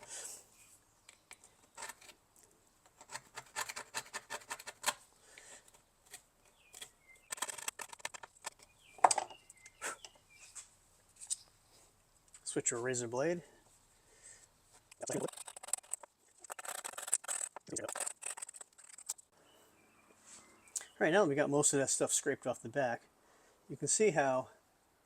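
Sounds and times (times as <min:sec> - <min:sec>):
putty knife scraping plastic: 0:03.0 - 0:05.0, 0:15.0 - 0:19.2.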